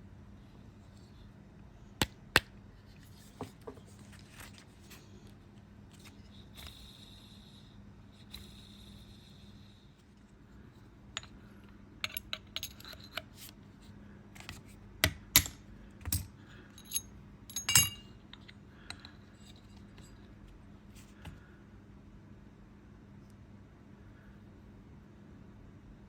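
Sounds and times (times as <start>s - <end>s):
metal parts and tools clinking: 12.0s - 13.3s, 15.3s - 18.5s.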